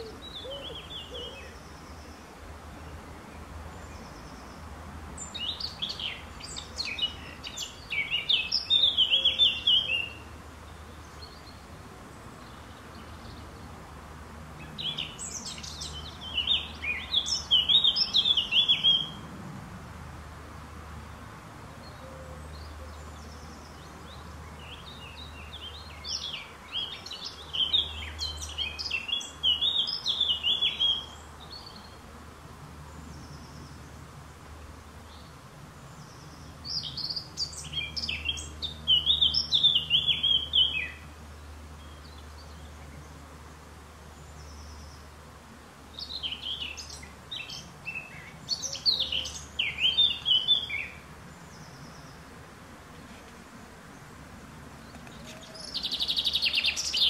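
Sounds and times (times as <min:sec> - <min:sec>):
songbird singing with trills: 0:00.0 - 0:02.2, 0:05.2 - 0:11.7, 0:14.6 - 0:19.2, 0:21.8 - 0:32.0, 0:35.9 - 0:43.2, 0:45.9 - 0:52.2, 0:54.8 - 0:57.0.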